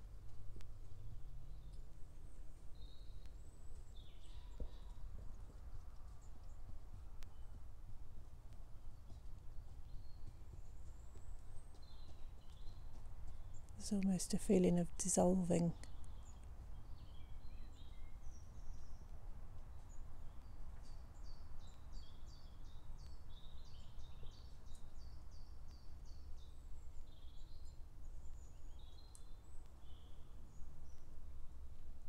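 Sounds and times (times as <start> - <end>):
songbirds singing: 1.0 - 7.8, 8.7 - 31.4.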